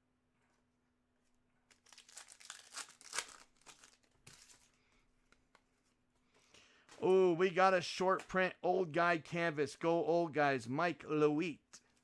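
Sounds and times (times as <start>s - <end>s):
card pack wrapper crinkling and tearing: 1.7s - 4.8s
handling rustle: 1.7s - 6.2s.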